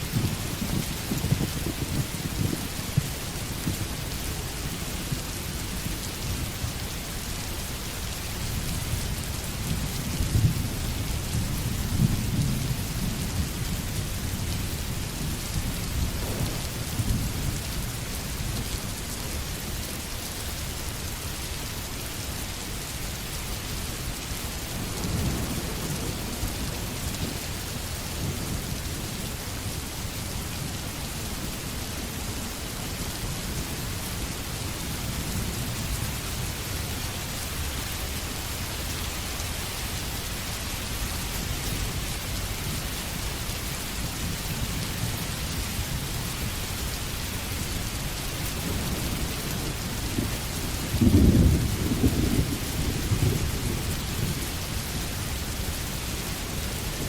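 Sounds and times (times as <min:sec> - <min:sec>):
low rumbling: 0:15.9 - 0:18.0.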